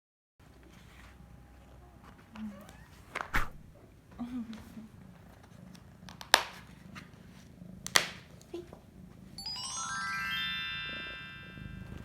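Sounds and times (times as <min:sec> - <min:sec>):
rising chime-like tones: 0:09.4 - 0:12.0.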